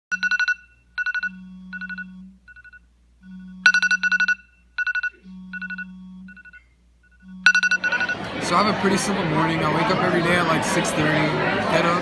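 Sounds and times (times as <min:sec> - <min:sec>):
electronic phone alarm tone: 0:00.1 - 0:08.3.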